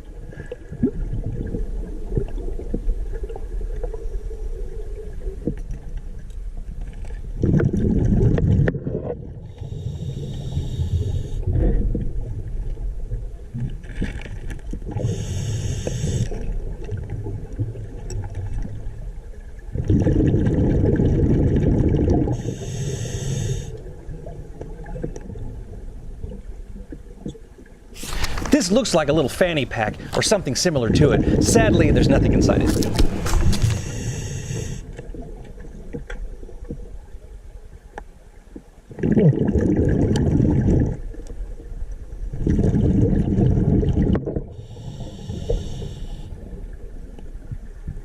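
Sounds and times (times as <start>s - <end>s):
exhaled bubbles underwater: 0.0s - 6.2s, 7.0s - 37.6s, 38.5s - 48.0s
regulator hissing inhalations: 9.6s - 11.4s, 15.0s - 16.4s, 22.4s - 23.7s, 28.0s - 30.6s, 32.8s - 34.9s, 44.6s - 46.3s.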